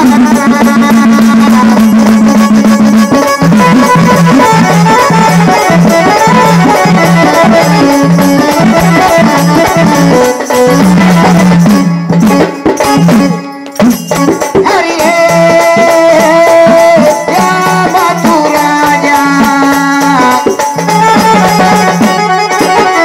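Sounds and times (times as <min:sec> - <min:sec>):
rattling percussion: 0:00.0 - 0:23.0
steady drum: 0:00.0 - 0:23.0
reed-like melody: 0:00.3 - 0:23.0.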